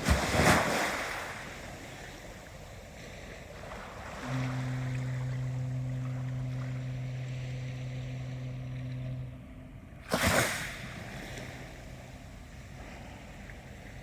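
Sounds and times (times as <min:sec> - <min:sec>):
ocean waves washing: 0:00.0 - 0:14.0
steady low drone: 0:03.7 - 0:14.0.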